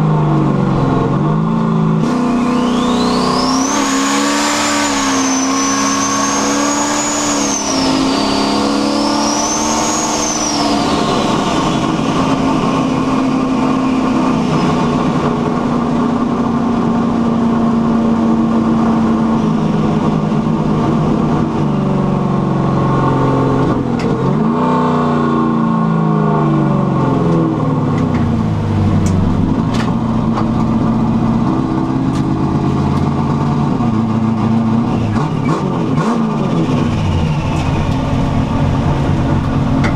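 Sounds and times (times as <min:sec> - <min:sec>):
car engine running: 0:00.0 - 0:39.9
turbo whistle: 0:02.4 - 0:11.5.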